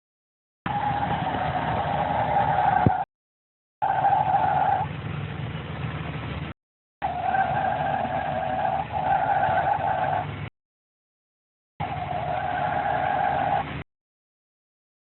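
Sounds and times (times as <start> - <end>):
car engine humming: 0.7 - 3.0, 3.8 - 10.5
high-pitched squeal: 0.7 - 3.1, 3.8 - 4.9, 7.0 - 10.3, 11.8 - 13.8.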